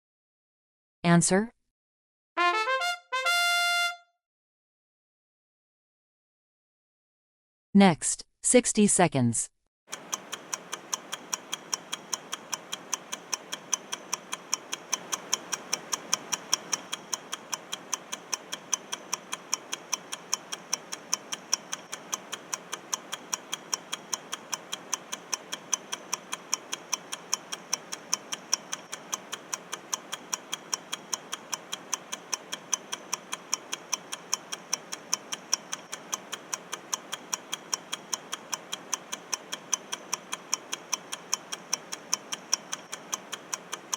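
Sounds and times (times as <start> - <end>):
clock ticking rapidly: 9.9 - 43.9.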